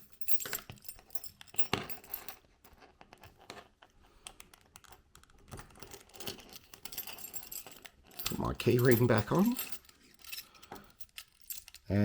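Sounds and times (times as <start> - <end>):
metal keys jingling: 0.0 - 2.4, 4.8 - 12.0.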